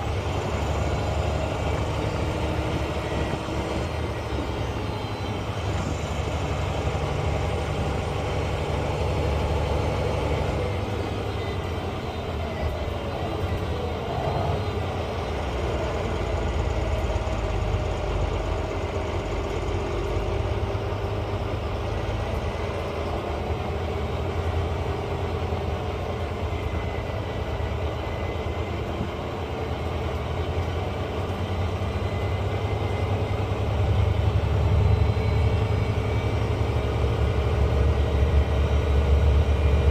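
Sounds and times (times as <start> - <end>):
bus diesel engine rumbling: 0.0 - 39.9
turbo whistling: 31.5 - 39.8.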